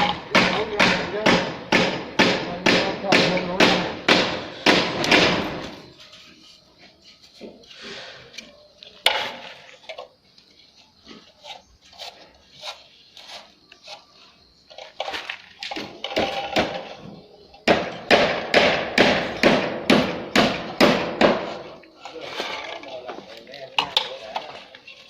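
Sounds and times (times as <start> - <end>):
masonry knocks: 0.0 - 5.9, 15.7 - 21.8.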